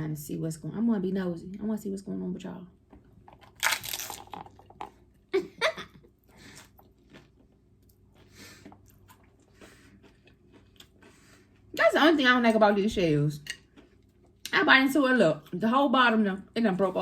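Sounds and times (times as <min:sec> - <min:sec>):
taco shell crunching: 0:03.2 - 0:05.0
crunchy chewing: 0:06.5 - 0:11.7.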